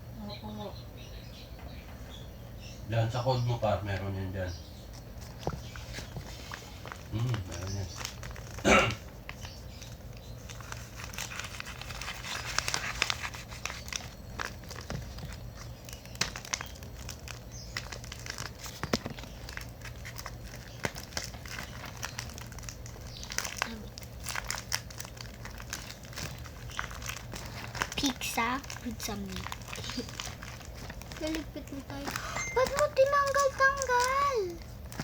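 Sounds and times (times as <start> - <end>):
packaging crinkling: 4.8 - 35.0.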